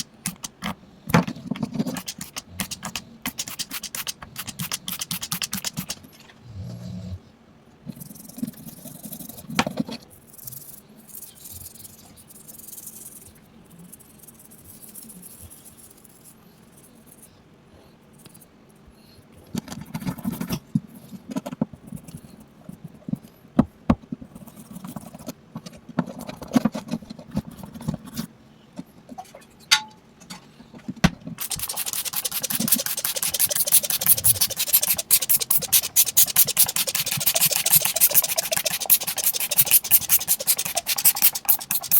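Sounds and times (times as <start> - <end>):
fast scratching and rubbing: 1.5 - 6.2, 7.9 - 17.3, 19.8 - 23.1, 24.3 - 28.3, 31.3 - 41.9.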